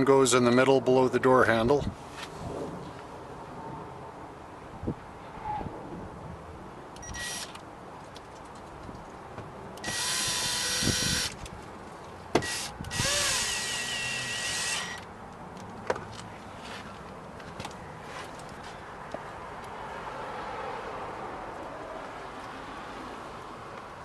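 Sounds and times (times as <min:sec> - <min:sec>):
cordless drill driving screws: 0:07.0 - 0:07.6, 0:09.8 - 0:11.4, 0:12.4 - 0:15.1.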